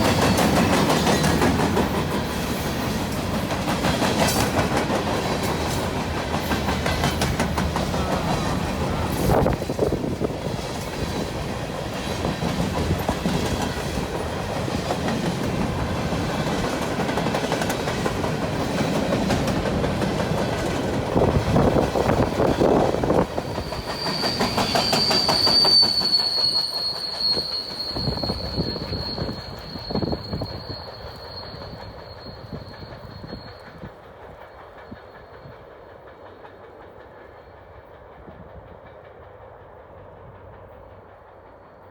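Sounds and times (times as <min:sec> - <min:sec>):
train cars clickety-clack: 0:00.0 - 0:41.9
high steady wheel squeal: 0:21.5 - 0:35.5.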